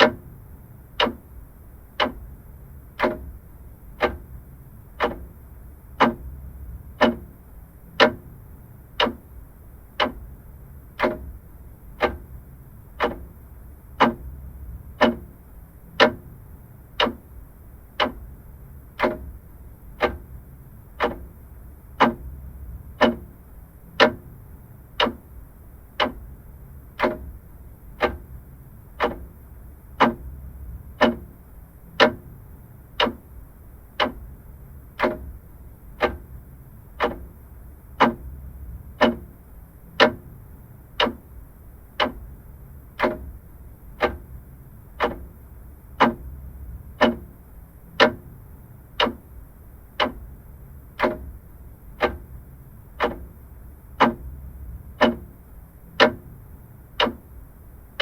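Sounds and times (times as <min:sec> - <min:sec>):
faint low hum: 0:00.0 - 0:58.0
mechanical clock ticking: 0:00.0 - 0:58.0.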